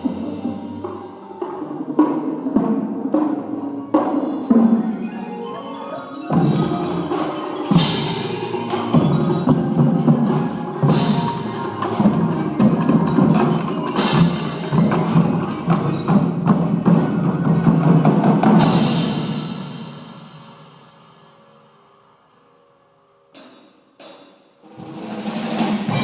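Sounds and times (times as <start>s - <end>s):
drumline drum strokes: 0.0s - 21.6s, 23.4s - 26.0s
mallet percussion chords: 0.0s - 22.2s
cymbal crashes: 6.3s - 15.8s, 18.5s - 22.2s.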